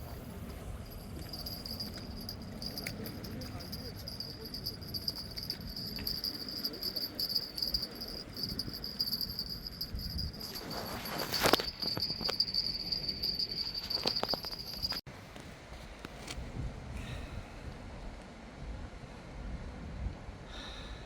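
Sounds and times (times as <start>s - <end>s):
insects chirring: 0.7s - 15.0s
low rumbling background noise: 15.1s - 21.0s.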